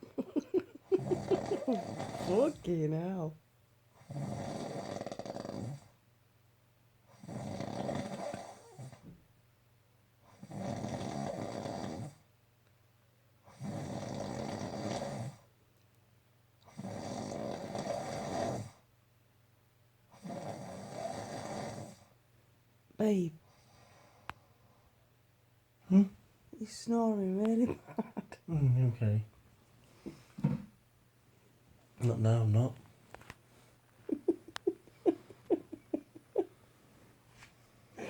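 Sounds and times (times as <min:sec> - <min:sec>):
person snoring: 0:00.2 - 0:02.6, 0:34.1 - 0:36.5.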